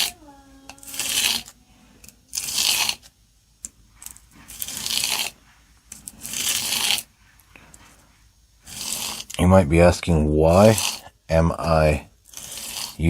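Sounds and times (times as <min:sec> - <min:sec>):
blade scraping on sandpaper: 0:00.0 - 0:01.6, 0:02.3 - 0:03.1, 0:04.4 - 0:05.4, 0:06.1 - 0:07.1, 0:08.6 - 0:09.4, 0:10.5 - 0:11.1, 0:12.3 - 0:13.0.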